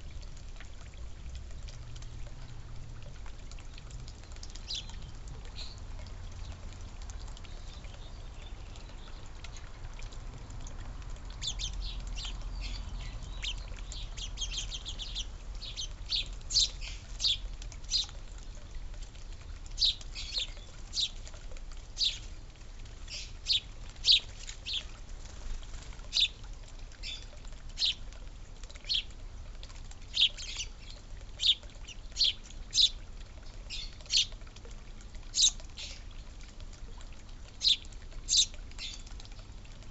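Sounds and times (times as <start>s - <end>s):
birds chirping: 11.4s - 18.6s, 19.7s - 21.2s, 22.0s - 22.3s, 23.0s - 24.9s, 26.1s - 26.4s, 27.0s - 28.0s, 28.9s - 29.1s, 30.1s - 33.0s, 33.7s - 34.4s, 35.3s - 36.0s, 37.6s - 39.0s.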